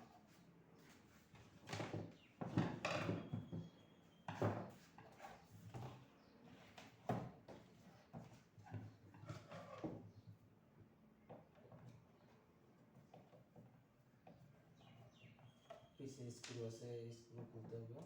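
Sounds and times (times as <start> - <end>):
knocks clatters and scrapes of fan: 1.3 - 3.7.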